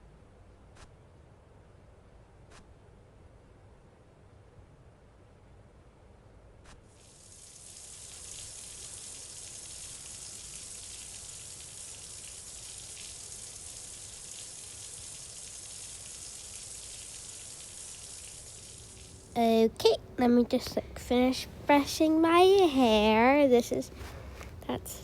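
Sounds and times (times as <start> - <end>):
running water hiss: 6.9 - 25.0.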